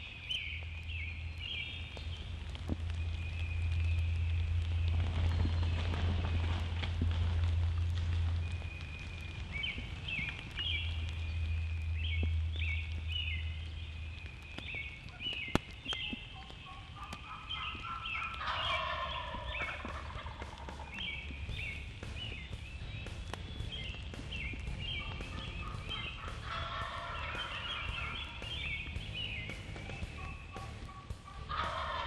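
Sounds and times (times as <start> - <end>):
songbirds chirping: 0.0 - 32.0
turkey gobbling: 15.0 - 32.0.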